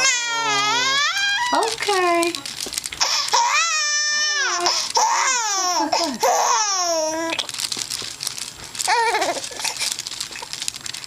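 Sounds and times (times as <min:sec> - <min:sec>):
young animal crying: 0:00.0 - 0:01.8, 0:03.0 - 0:07.3
crinkly rustling: 0:00.0 - 0:11.0.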